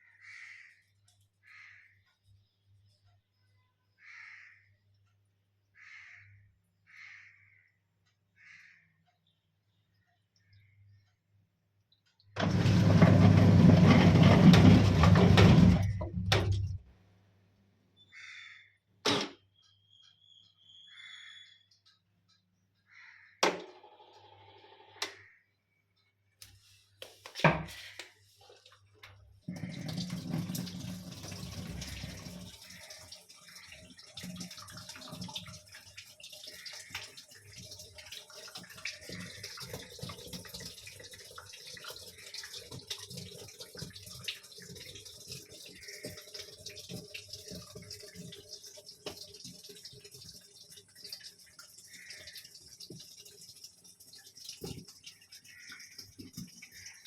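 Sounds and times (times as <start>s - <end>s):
water running in washing machine: 12.4s - 16.9s, 28.4s - 57.0s.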